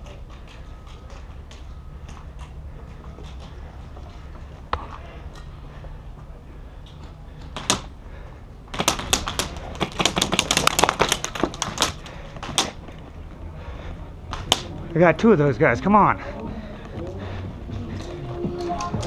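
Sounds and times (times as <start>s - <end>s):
airsoft rifle firing: 8.7s - 12.0s.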